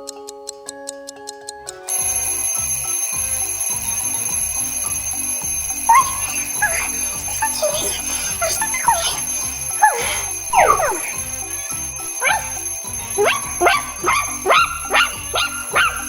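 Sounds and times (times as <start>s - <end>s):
soft music: 0.0s - 16.0s
alarm clock ringing: 1.9s - 16.0s
pulsing beat: 4.9s - 16.0s.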